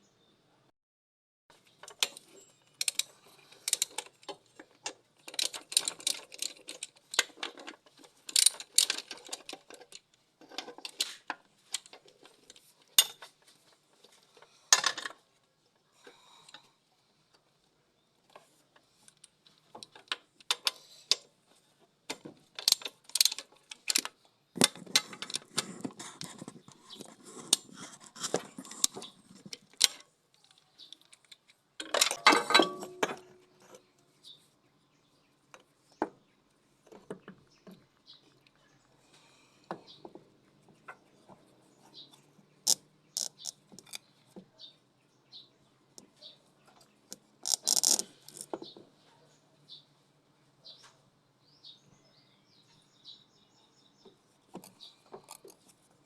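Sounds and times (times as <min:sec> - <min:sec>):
metal tools clinking: 0:31.8 - 0:33.4.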